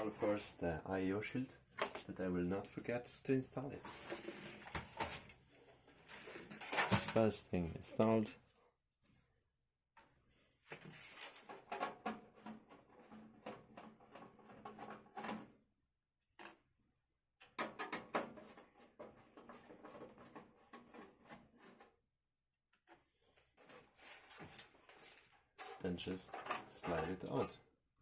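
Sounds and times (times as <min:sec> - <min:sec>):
plastic and metal parts rattling: 0:01.8 - 0:02.1, 0:06.1 - 0:07.3, 0:10.8 - 0:15.6, 0:23.6 - 0:27.6.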